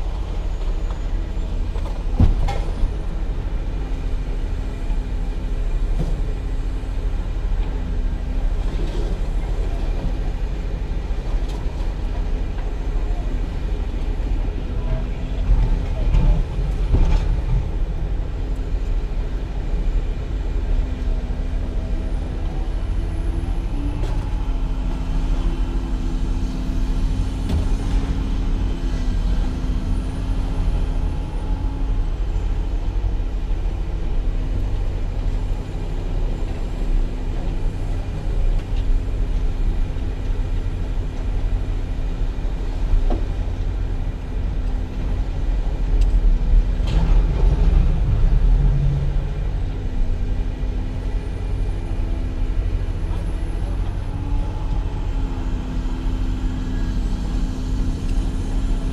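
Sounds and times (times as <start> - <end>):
vehicle engine rumbling: 0.0 - 58.9.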